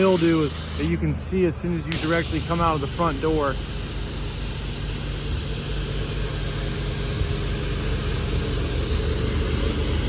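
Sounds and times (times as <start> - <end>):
water spray hissing: 0.0 - 1.2, 1.8 - 7.6
pressure washer engine running: 0.0 - 10.0.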